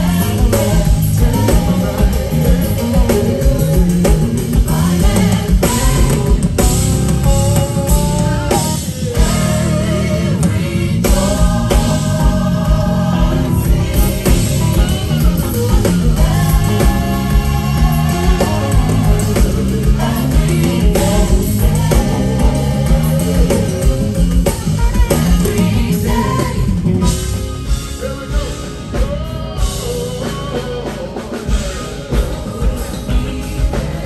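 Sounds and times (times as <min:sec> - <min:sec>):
live band playing gospel music: 0:00.0 - 0:34.0.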